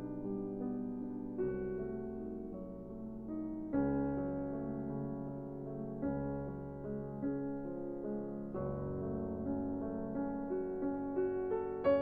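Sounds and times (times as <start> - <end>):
soft piano melody: 0.0 - 12.0.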